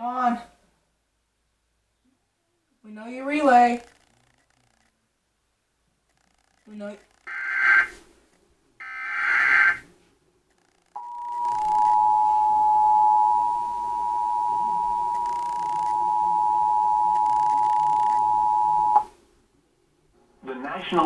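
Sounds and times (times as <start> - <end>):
harsh digital data screech: 6.1 - 8.0, 8.8 - 9.8
two-tone attention signal: 11.0 - 19.0.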